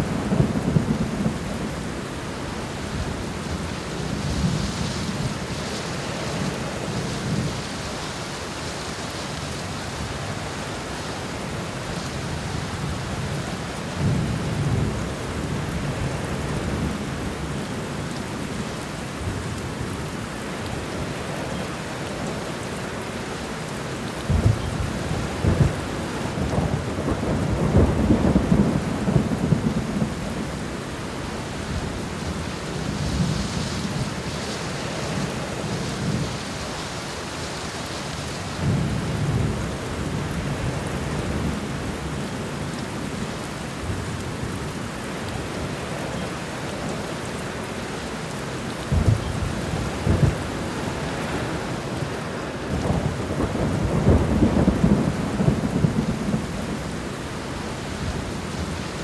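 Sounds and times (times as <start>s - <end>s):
steady rain falling: 0.0s - 59.0s
rolling thunder: 24.3s - 30.8s, 48.8s - 52.1s, 52.7s - 59.0s.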